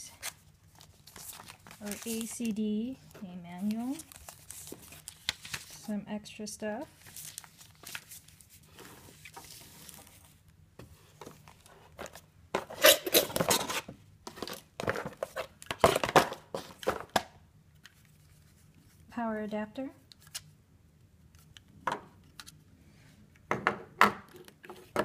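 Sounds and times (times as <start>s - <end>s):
packaging crinkling and rustling: 0.2s - 5.9s, 7.0s - 10.5s.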